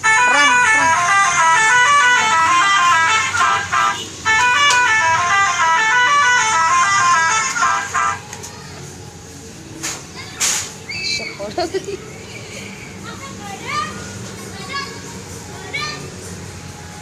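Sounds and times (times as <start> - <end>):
bus musical air horn: 0.0 - 8.2.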